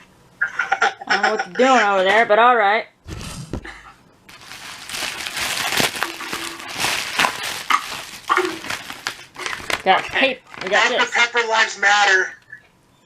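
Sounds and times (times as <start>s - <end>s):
envelope tearing and crumpling: 4.3s - 11.0s.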